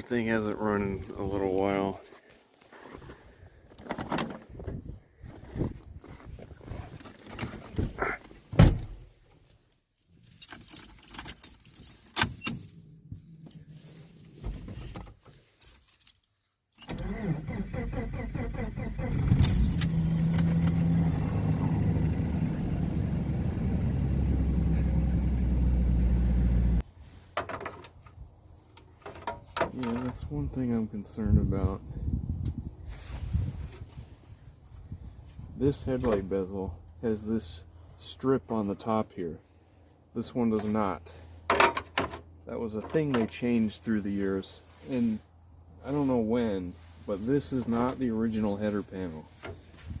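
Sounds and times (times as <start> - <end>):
keys jangling: 10.1 - 12.8, 19.4 - 20.1
car engine starting and running: 16.8 - 26.8.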